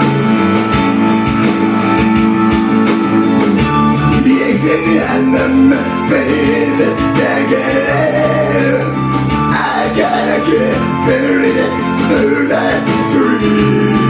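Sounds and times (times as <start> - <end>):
guitar playing: 0.0 - 14.0
person singing: 4.2 - 14.0.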